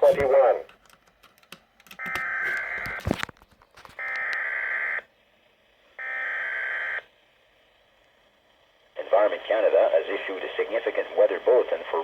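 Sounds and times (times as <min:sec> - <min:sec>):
static clicks: 0:00.1 - 0:04.4.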